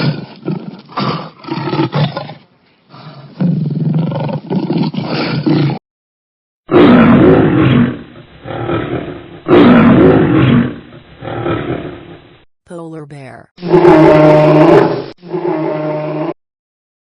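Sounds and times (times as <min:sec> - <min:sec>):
big cat roaring: 0:00.0 - 0:02.4, 0:06.7 - 0:12.0, 0:13.6 - 0:16.4
big cat growling: 0:00.0 - 0:05.8.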